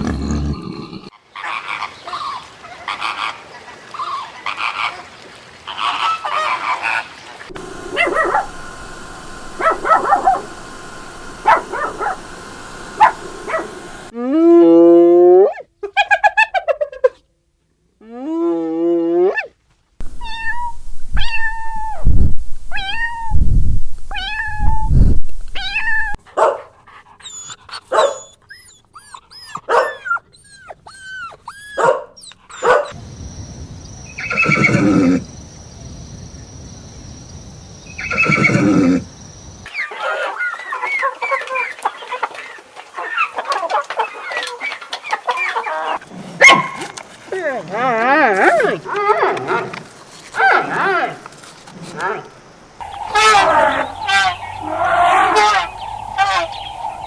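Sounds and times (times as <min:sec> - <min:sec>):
meow-like animal calls: 0:20.2 - 0:22.1, 0:22.7 - 0:23.4, 0:24.1 - 0:24.9, 0:52.8 - 0:57.0
long loud animal calls: 0:34.0 - 0:35.4, 0:37.9 - 0:39.1, 0:52.8 - 0:57.0
short animal calls: 0:34.2 - 0:35.3, 0:37.9 - 0:39.1, 0:52.8 - 0:57.0
chorus of small chirping calls: 0:52.8 - 0:57.0.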